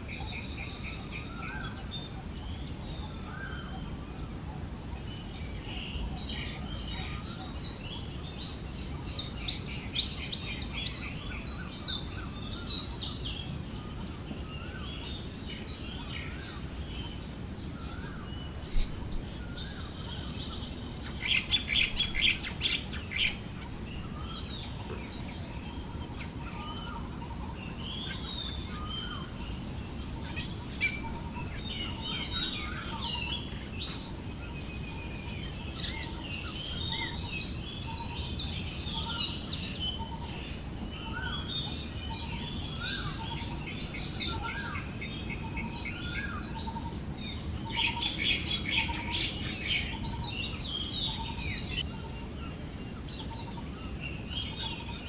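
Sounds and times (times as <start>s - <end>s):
high insect drone: 0.0s - 55.0s
birds chirping: 17.8s - 55.0s.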